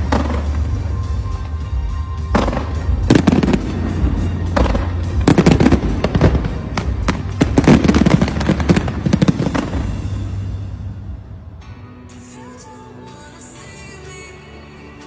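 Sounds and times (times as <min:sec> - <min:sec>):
fireworks bangs and crackles: 0:00.0 - 0:11.4.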